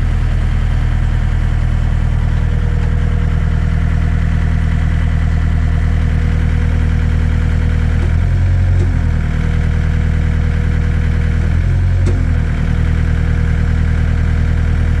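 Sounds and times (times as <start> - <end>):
diesel engine idling: 0.0 - 15.0
click: 7.9 - 9.8, 11.2 - 12.6.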